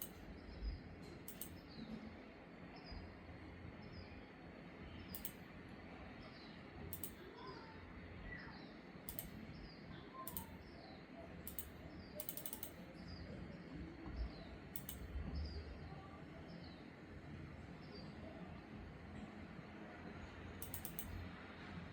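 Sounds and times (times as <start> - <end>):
mouse buttons clicking: 0.0 - 0.2, 1.3 - 1.6, 5.2 - 5.4, 6.9 - 7.2, 9.1 - 9.4, 10.3 - 10.6, 11.5 - 12.8, 14.8 - 15.1, 20.6 - 21.2.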